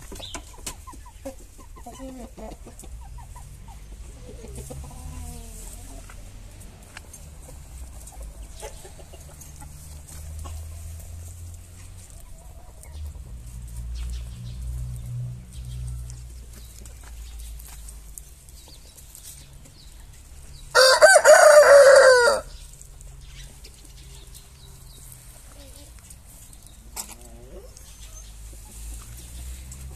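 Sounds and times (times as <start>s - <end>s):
rooster crowing: 20.7s - 22.5s.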